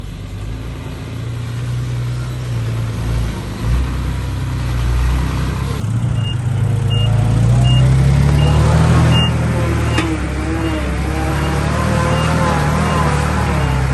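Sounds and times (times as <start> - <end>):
diesel truck engine running: 0.0 - 13.9
reversing alarm beeps: 6.2 - 10.0, 10.6 - 13.9.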